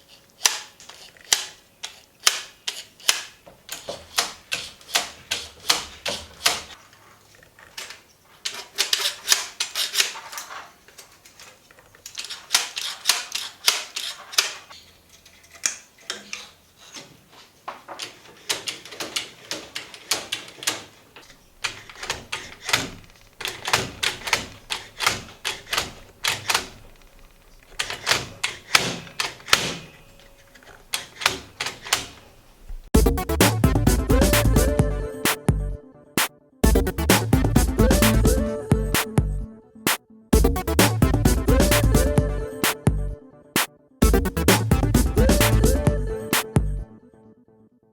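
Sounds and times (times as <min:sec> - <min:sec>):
magnet machine clattering clicks: 0:00.4 - 0:06.8, 0:07.6 - 0:16.6, 0:18.0 - 0:32.2.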